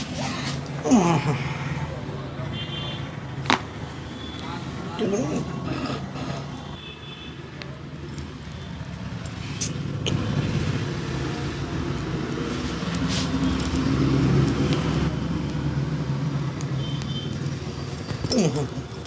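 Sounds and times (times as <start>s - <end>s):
vehicle engine passing: 8.2s - 19.0s.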